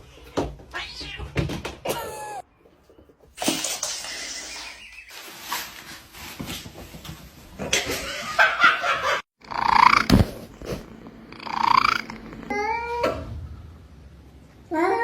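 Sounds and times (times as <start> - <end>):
cat calling: 11.4 - 12.7.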